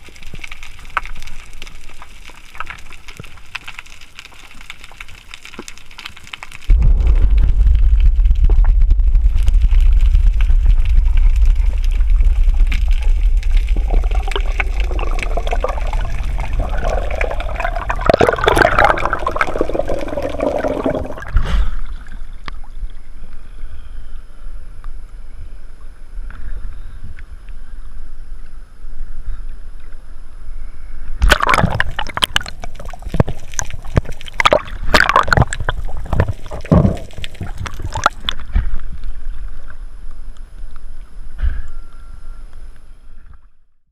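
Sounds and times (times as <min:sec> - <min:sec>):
gurgling water: 0:00.0 - 0:23.1, 0:31.2 - 0:39.8
deep underwater rumble: 0:06.0 - 0:43.7
bubbling and knocking bursts: 0:06.7 - 0:21.6, 0:31.2 - 0:38.3.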